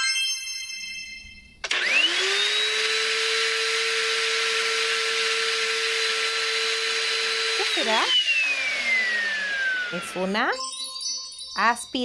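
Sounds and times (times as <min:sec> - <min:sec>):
vacuum cleaner motor whine: 0:01.6 - 0:10.6.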